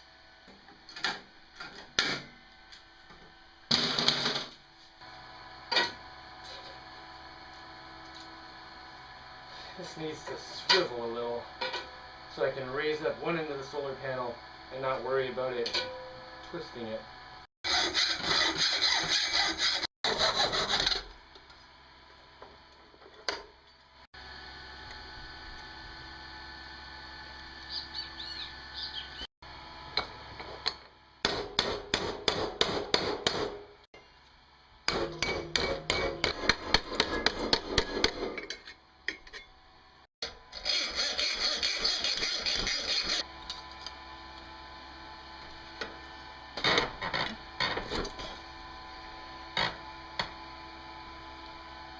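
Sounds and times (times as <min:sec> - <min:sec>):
hand tool strokes: 0:17.7 - 0:21.0, 0:40.5 - 0:43.3.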